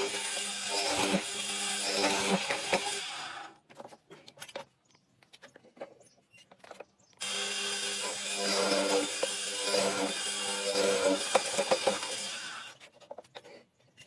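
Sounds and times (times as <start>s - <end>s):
power tool humming: 0.0s - 3.5s, 7.2s - 12.8s.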